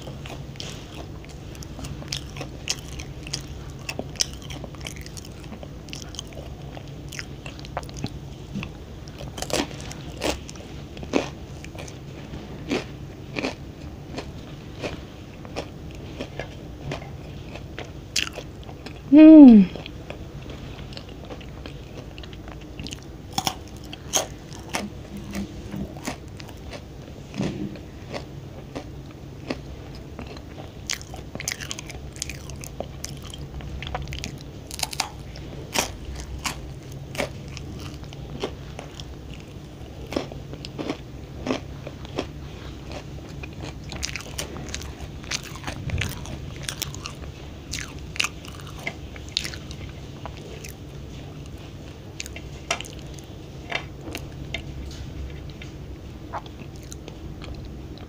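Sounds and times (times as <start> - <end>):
crunching biscuit: 9.0 - 19.1, 27.8 - 50.8.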